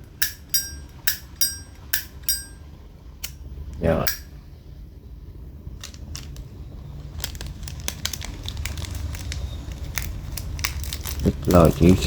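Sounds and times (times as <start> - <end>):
crinkling and crackling: 5.6 - 12.0.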